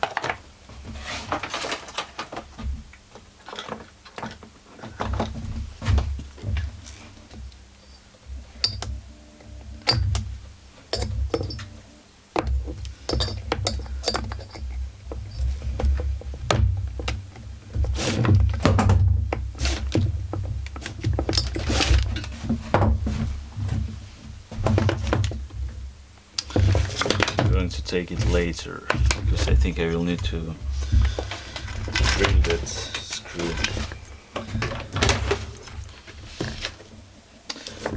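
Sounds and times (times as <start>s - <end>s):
hand tools clicking and knocking: 13.1s - 16.0s, 26.4s - 35.4s.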